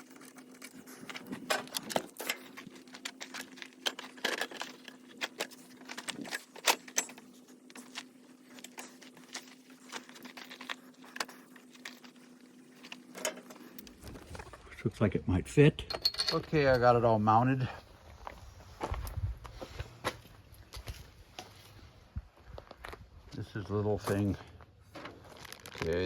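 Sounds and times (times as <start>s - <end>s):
steady low hum: 0.0s - 25.4s
metal clinks and knocks: 15.8s - 17.1s.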